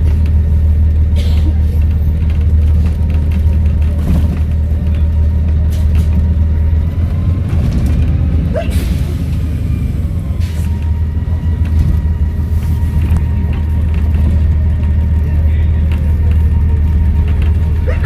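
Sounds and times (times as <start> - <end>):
bus engine droning: 0.0 - 18.0.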